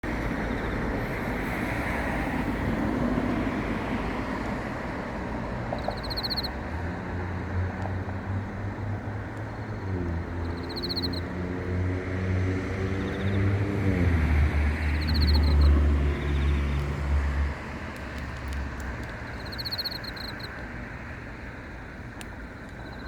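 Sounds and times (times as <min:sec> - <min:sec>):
cricket chirping: 0:05.7 - 0:06.6, 0:08.7 - 0:11.2, 0:13.0 - 0:13.6, 0:14.8 - 0:16.9, 0:19.1 - 0:23.0.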